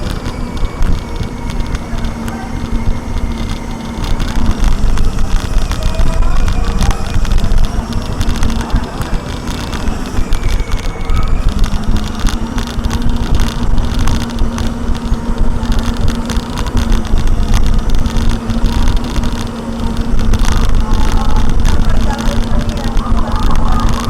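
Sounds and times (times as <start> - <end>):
car engine drone: 0.0 - 24.0
road and wind rumble: 0.0 - 24.0.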